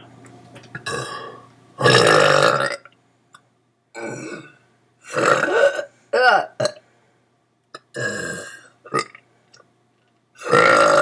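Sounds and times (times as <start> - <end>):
person belching: 0.8 - 2.9, 4.0 - 6.8, 7.8 - 9.2, 10.4 - 11.0.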